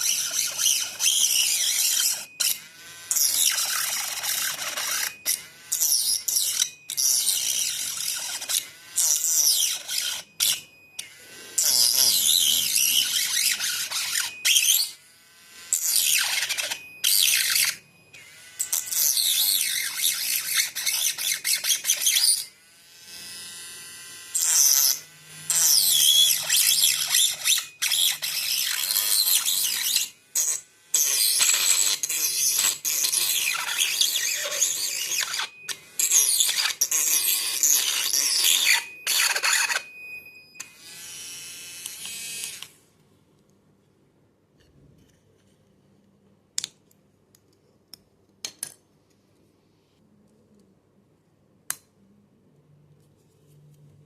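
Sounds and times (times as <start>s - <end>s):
mini grinder cutting: 0.0s - 39.9s, 40.6s - 42.8s.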